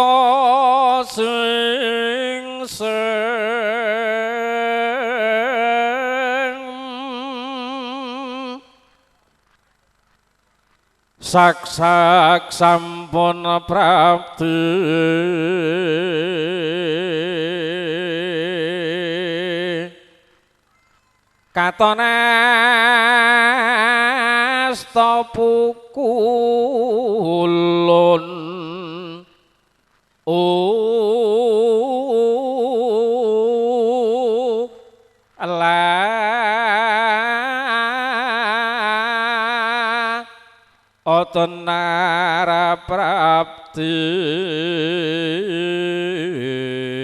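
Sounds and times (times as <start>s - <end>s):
person singing long vibrato note: 0.0s - 9.0s, 11.2s - 29.4s, 30.3s - 47.0s
person chanting sung verse: 0.0s - 9.2s, 11.2s - 20.3s, 21.3s - 29.5s, 30.2s - 47.0s.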